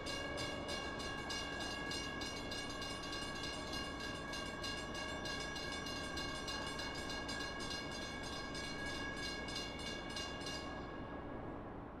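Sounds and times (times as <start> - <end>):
train bell ringing: 0.0 - 11.1.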